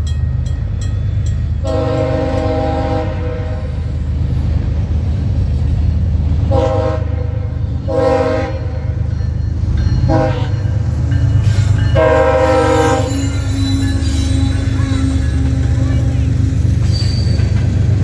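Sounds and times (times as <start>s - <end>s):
passing train rumble: 0.0s - 18.0s
locomotive air horn: 1.7s - 3.8s, 6.5s - 8.7s, 11.6s - 16.4s.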